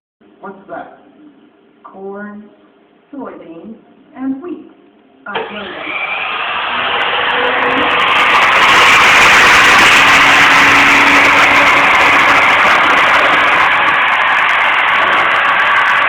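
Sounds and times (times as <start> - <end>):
spindle motor whirring: 5.4 - 16.0.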